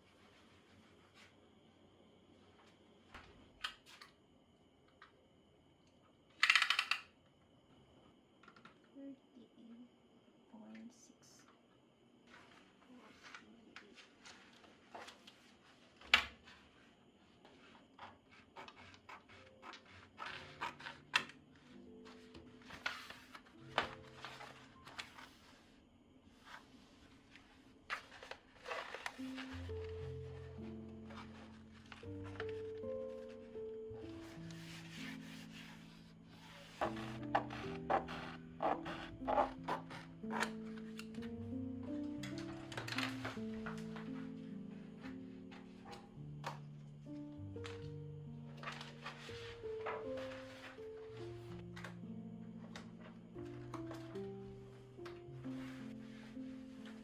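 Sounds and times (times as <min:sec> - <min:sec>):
small objects clicking and tapping: 0:06.4 - 0:07.1
faint background music: 0:08.2 - 0:57.0.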